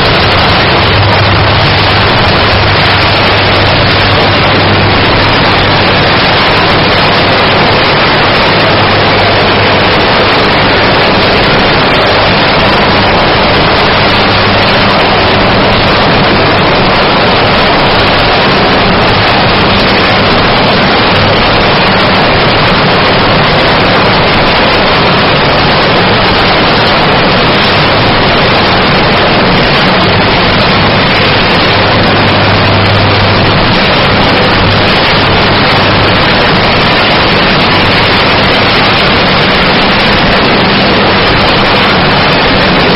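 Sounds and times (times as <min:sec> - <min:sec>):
arc furnace crackling: 0:00.0 - 0:06.4
steady low hum: 0:00.0 - 0:42.9.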